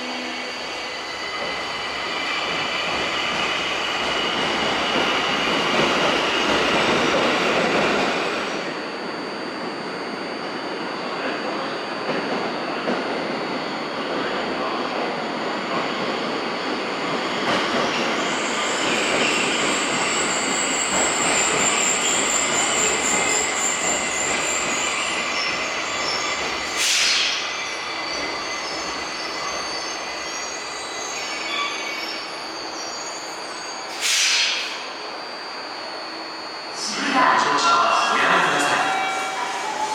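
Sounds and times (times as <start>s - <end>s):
train wheels squealing: 0.0s - 37.1s, 38.0s - 39.9s
air hiss bursts: 33.9s - 34.8s.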